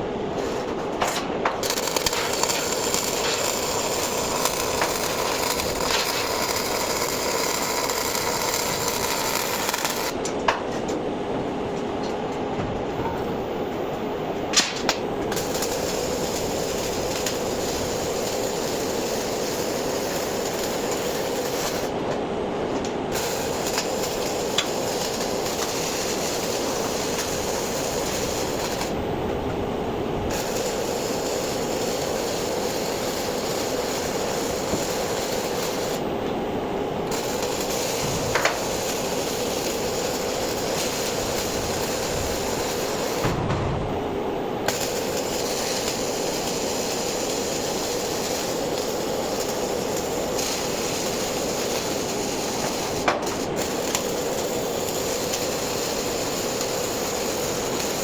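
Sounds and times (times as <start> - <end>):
welder arc frying hiss: 0.0 - 10.3, 14.6 - 29.0, 30.1 - 36.1, 36.9 - 58.0
welding sharp pops: 0.4 - 11.0, 14.5 - 22.0, 22.7 - 29.0, 30.3 - 36.0, 37.0 - 44.0, 44.6 - 58.0.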